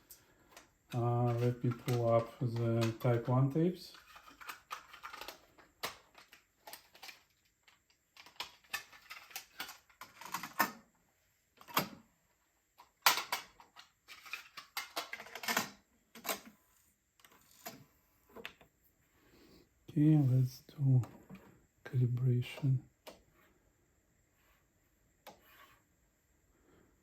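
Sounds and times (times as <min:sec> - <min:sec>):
cassette cases clicking and rattling: 0:03.9 - 0:10.9, 0:12.8 - 0:16.4.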